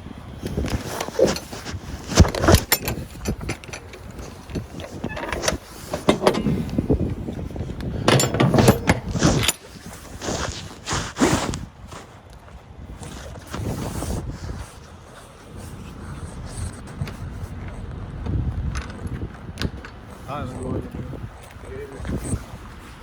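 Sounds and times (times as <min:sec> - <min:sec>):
irregular knocks and clattering: 0:00.8 - 0:09.7.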